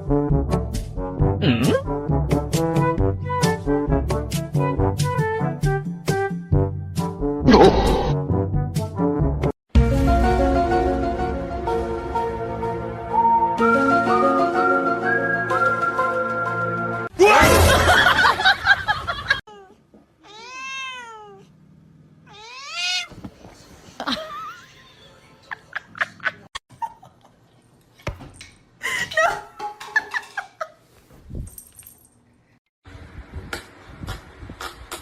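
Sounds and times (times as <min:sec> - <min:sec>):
cat meowing: 0:19.5 - 0:21.5, 0:22.3 - 0:23.1.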